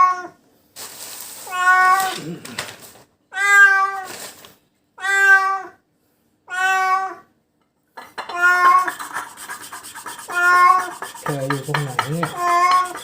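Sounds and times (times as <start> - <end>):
cat meowing in distress: 1.4 - 2.3, 3.3 - 4.1, 6.5 - 7.2, 12.3 - 13.0.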